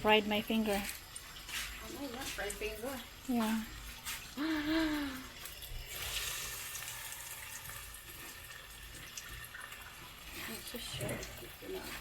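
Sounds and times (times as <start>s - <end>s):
kitchen tap water running: 0.0s - 12.0s
woman's voice: 1.8s - 3.7s.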